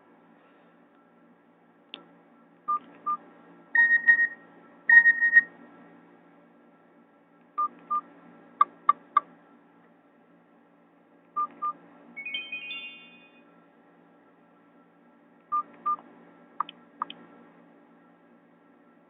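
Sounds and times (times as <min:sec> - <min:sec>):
two-note phone tone: 0:12.2 - 0:13.4.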